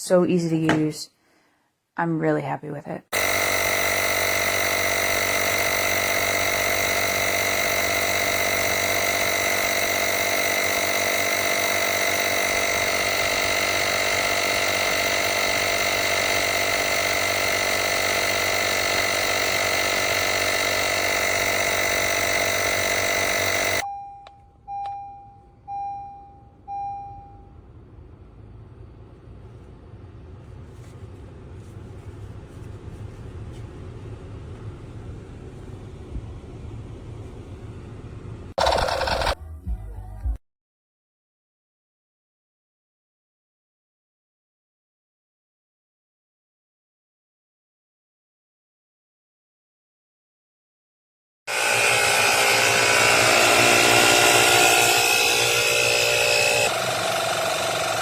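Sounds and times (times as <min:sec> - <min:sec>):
electric air compressor running: 0:03.1 - 0:23.8, 0:38.5 - 0:40.3, 0:51.5 - 0:58.0
short electronic beeps: 0:23.8 - 0:27.5.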